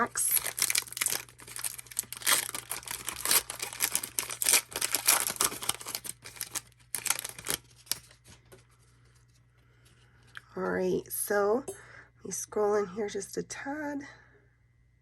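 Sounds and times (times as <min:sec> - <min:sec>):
card pack wrapper crinkling and tearing: 0:00.0 - 0:08.4.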